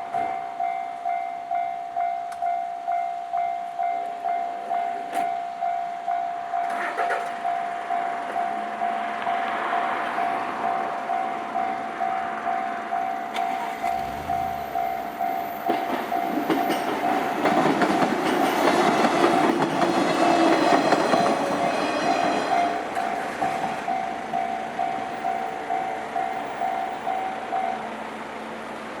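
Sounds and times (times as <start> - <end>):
level crossing alarm ringing: 12.6 - 22.9
train wheels clattering: 13.3 - 26.6.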